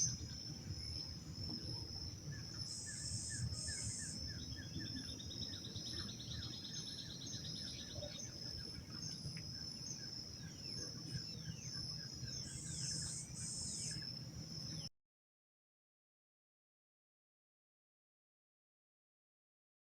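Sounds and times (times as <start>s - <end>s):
buzzy insect pulses: 0.0s - 14.8s
shrill insect tone: 0.0s - 14.9s.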